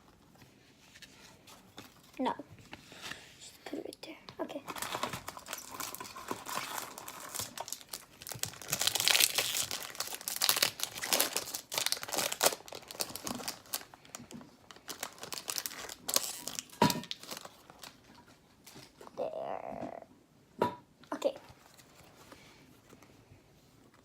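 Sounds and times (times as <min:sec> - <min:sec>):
foil wrapper tearing and crinkling: 0:04.7 - 0:18.0.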